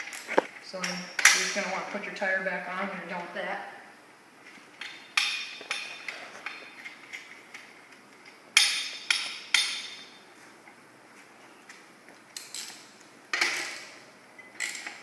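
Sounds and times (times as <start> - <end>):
sharp metallic clanks: 4.8 - 7.3, 8.6 - 10.2.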